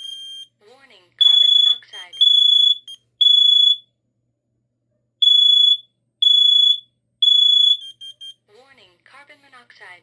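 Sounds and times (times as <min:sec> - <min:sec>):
shrill smoke alarm beeps: 0:00.0 - 0:00.5, 0:01.2 - 0:03.9, 0:05.2 - 0:08.4.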